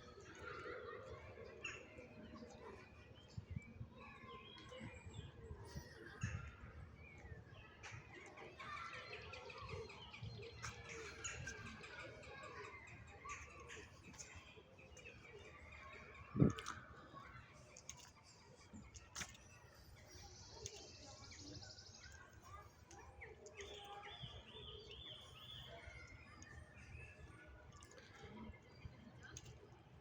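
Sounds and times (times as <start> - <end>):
birds chirping: 8.6 - 29.6.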